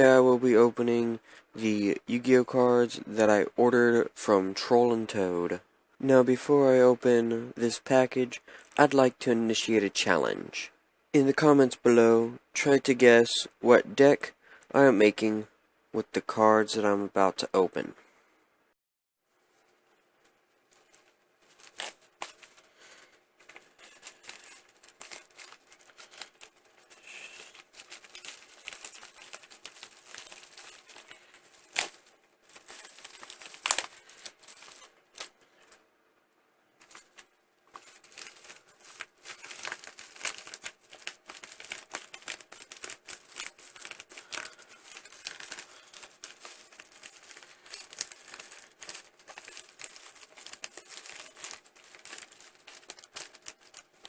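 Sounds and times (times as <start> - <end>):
packaging crinkling and tearing: 20.7 - 35.8, 36.8 - 54.0.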